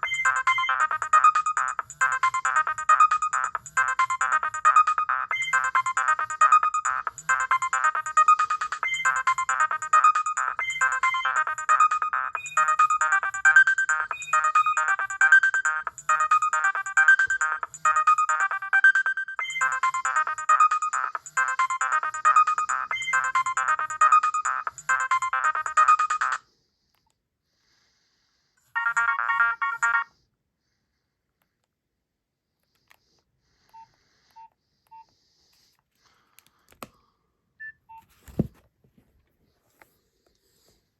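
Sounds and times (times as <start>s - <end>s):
phone ringtone melody: 0.0s - 26.4s, 28.7s - 30.2s.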